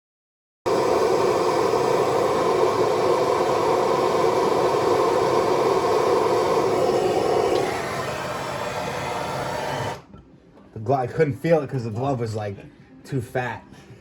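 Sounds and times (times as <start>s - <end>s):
steady machine noise: 0.7s - 10.1s.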